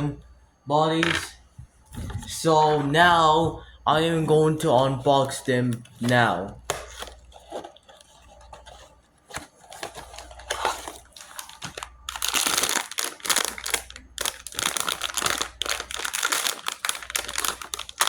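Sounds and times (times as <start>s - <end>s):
wrapping crinkling: 5.0s - 18.0s.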